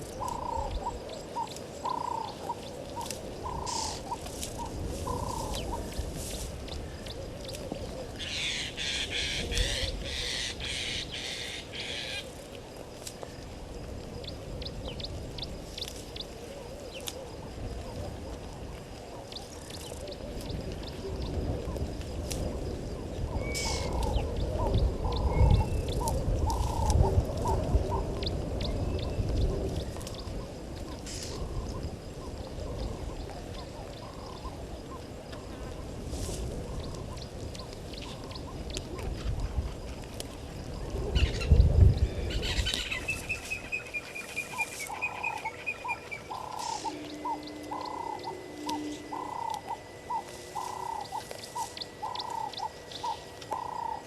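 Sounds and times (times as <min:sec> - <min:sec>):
low rumble: 0:34.7 - 0:54.0
bird trill: 0:42.3 - 0:54.0
short repeated animal calls: 0:42.5 - 0:54.0.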